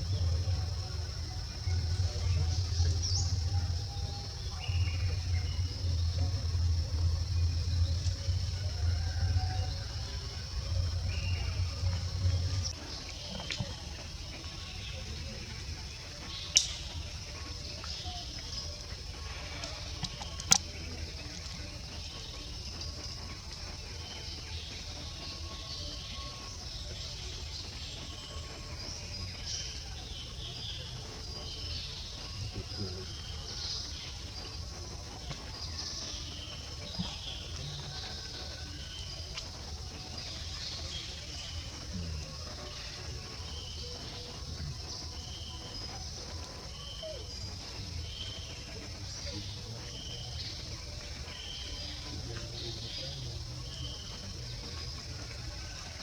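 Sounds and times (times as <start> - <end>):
low rumble: 0.0 - 25.3
high-pitched hiss: 0.0 - 56.0
insect chorus buzzing: 0.0 - 56.0
low steady rumble: 0.0 - 56.0
sharp click: 16.5 - 16.9.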